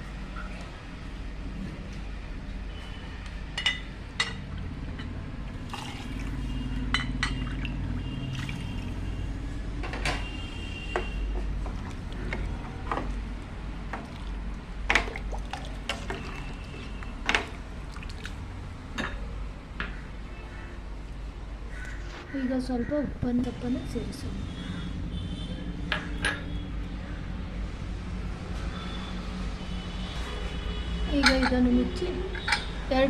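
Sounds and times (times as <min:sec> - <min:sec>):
water pouring into pot: 0:05.5 - 0:06.5.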